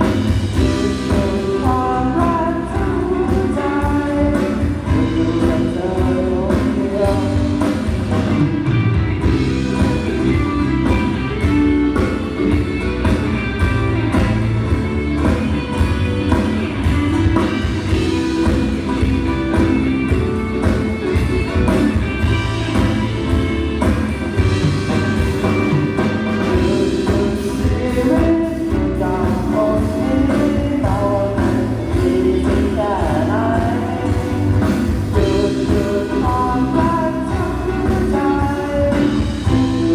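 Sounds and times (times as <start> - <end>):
person singing: 0.0 - 7.9, 26.2 - 39.9
amplified band music: 0.0 - 39.9.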